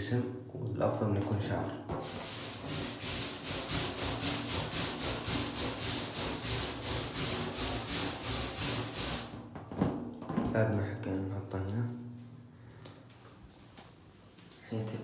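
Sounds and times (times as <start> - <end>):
balloon rubbing on hair: 2.0 - 9.3.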